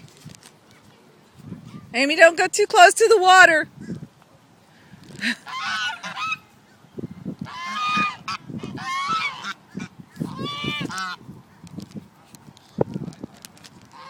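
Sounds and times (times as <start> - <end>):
geese honking: 5.4 - 6.6, 7.4 - 11.2.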